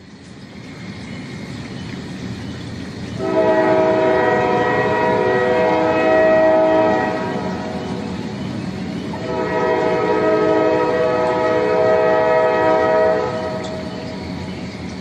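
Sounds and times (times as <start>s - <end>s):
train rumbling: 0.0s - 15.0s
train horn chord: 3.2s - 8.0s, 9.2s - 13.9s.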